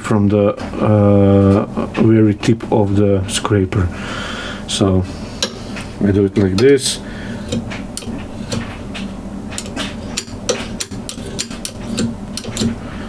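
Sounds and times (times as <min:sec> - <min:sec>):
screwdriver scraping metal: 0:07.3 - 0:08.8, 0:09.5 - 0:12.8.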